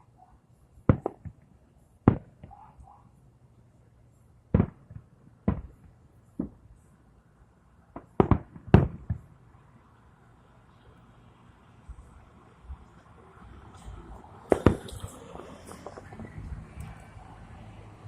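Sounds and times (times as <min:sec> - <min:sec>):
fireworks banging: 0:00.9 - 0:01.4, 0:04.5 - 0:06.6, 0:08.0 - 0:09.3, 0:14.4 - 0:16.5.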